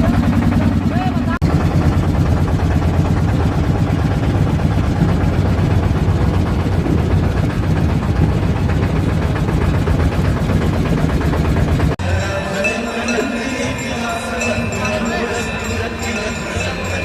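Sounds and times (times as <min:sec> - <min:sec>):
heavy engine humming: 0:00.0 - 0:17.0.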